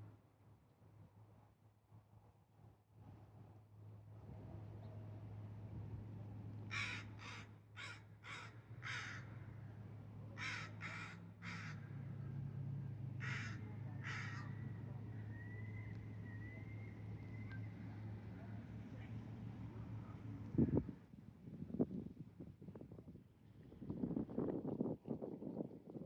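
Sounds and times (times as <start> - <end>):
crow cawing: 6.7 - 9.4, 10.4 - 11.9, 13.2 - 14.6.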